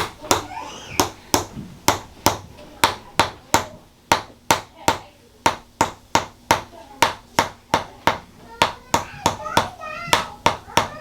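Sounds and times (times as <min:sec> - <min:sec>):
sharp rhythmic taps: 0:00.0 - 0:11.0.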